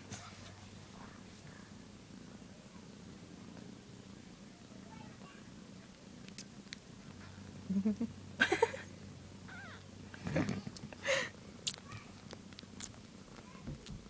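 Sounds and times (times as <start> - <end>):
kittens crying and mewing: 9.5 - 9.9.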